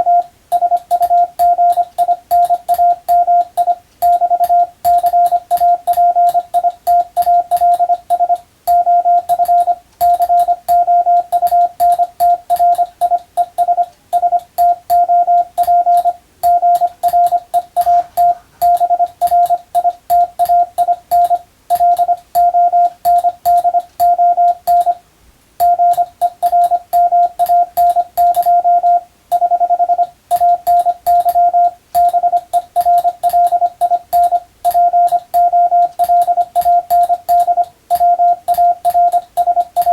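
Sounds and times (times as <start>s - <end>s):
morse code beeps: 0.0s - 25.0s, 25.6s - 39.9s.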